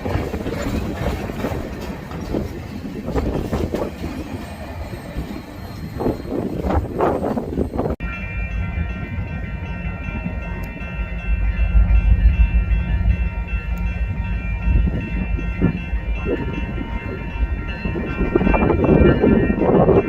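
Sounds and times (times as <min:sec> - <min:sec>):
train wheels and cars rattling: 0:00.0 - 0:08.1
locomotive rumble and whine: 0:00.0 - 0:20.0.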